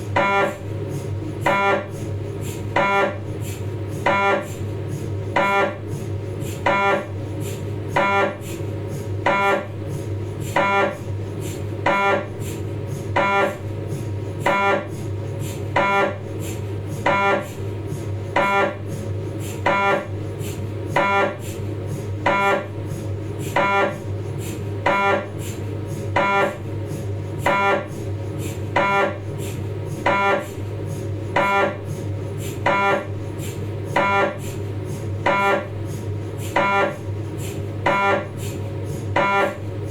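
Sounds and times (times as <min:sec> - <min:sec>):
scanner steady hum: 0:00.0 - 0:39.9.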